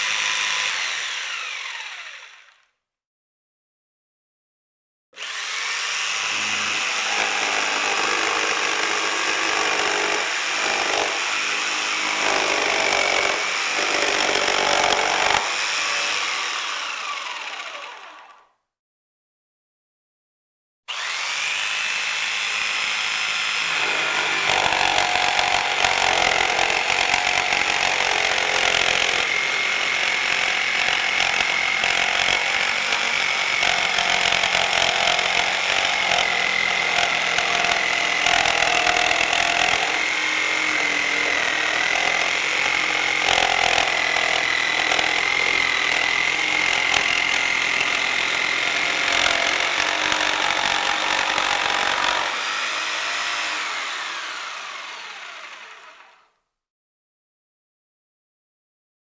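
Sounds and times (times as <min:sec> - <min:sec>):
electric saw cutting: 0:00.0 - 0:02.7, 0:05.2 - 0:18.5, 0:20.9 - 0:56.3.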